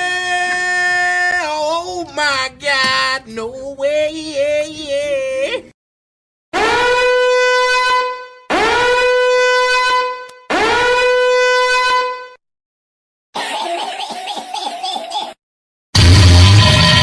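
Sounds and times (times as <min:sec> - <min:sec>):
goofy drawn-out yell: 0:00.0 - 0:01.9
rough wavering yell: 0:00.0 - 0:02.0.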